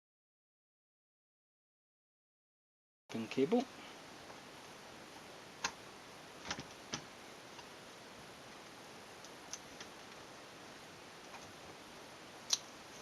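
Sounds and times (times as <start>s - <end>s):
faint steady hiss: 3.1s - 13.0s.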